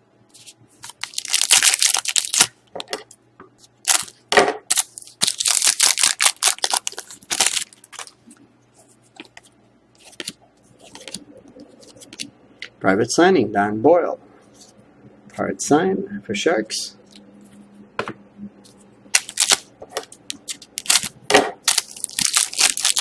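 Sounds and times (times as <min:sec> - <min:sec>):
card packs crinkling and rustling: 0:00.8 - 0:02.5, 0:03.8 - 0:08.3, 0:19.2 - 0:23.0.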